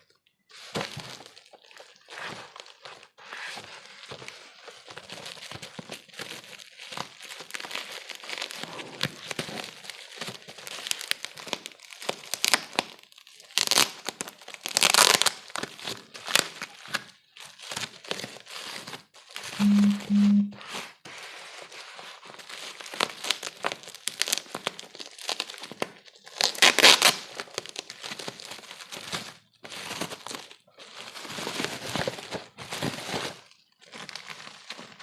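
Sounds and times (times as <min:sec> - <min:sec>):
packaging crinkling: 0:00.7 - 0:18.7
packaging tearing: 0:04.8 - 0:16.9, 0:22.8 - 0:29.1.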